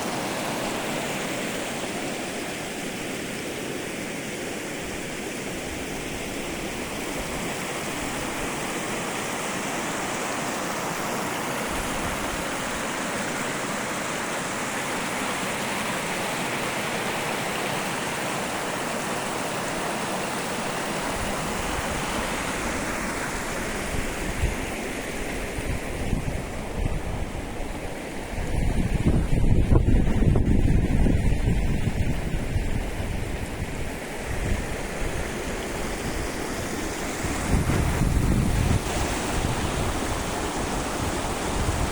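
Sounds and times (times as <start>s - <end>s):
rushing water: 0.0s - 41.9s
wind buffeting microphone: 21.0s - 41.9s.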